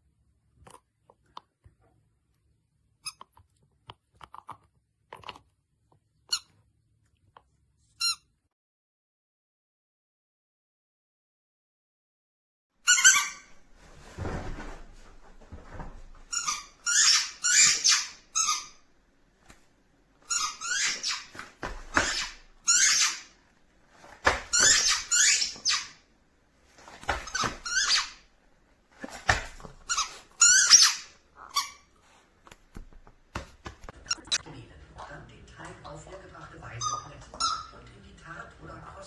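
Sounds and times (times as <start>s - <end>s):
squeaky rubber dog toy: 3.0s - 3.2s, 6.3s - 6.5s, 8.0s - 8.3s, 12.8s - 13.6s, 16.3s - 18.8s, 20.3s - 23.3s, 24.5s - 26.0s, 27.2s - 28.2s, 29.1s - 32.2s, 36.8s - 37.8s.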